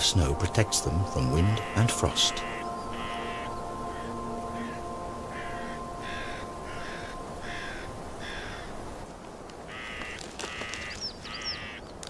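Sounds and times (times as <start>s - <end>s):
crow cawing: 1.6s - 9.0s, 9.6s - 11.9s.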